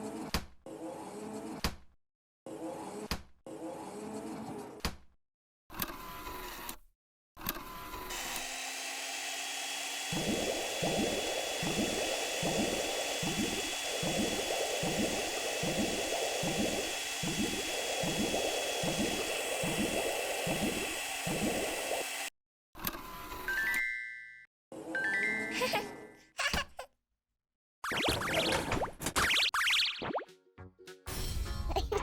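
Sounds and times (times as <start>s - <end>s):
water spraying hiss: 8.9s - 22.3s.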